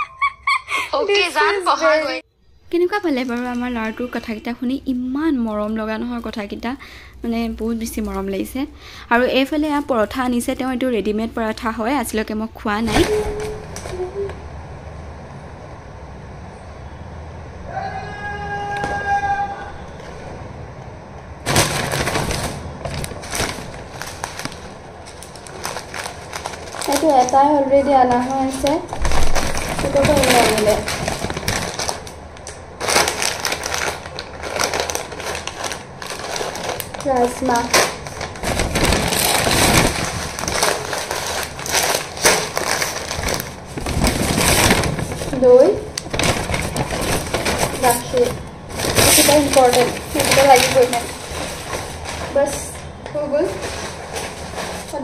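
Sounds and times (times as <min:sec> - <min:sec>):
packaging crackling and crinkling: 0:21.4 - 0:55.0.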